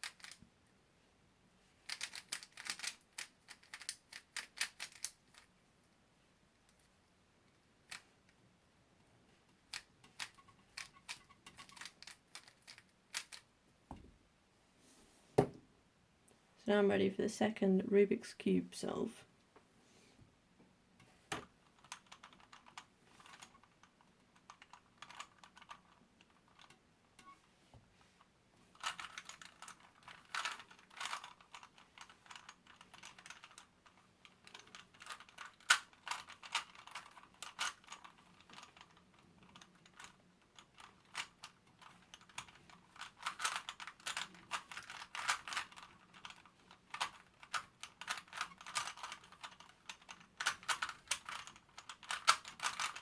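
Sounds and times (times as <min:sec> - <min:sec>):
puzzle cube layers clacking: 0:00.0 - 0:00.4, 0:01.8 - 0:05.5, 0:09.5 - 0:13.5, 0:28.8 - 0:53.0.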